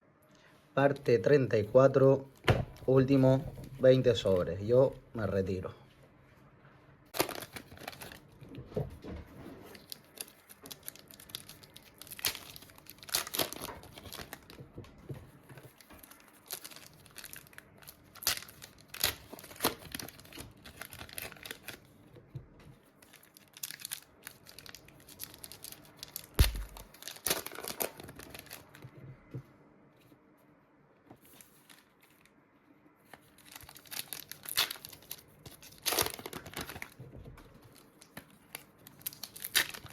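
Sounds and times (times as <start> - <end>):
card packet wrappers tearing: 7.2 - 8.2, 9.7 - 14.6, 15.8 - 21.9, 23.0 - 28.8, 33.3 - 37.0, 37.7 - 39.9.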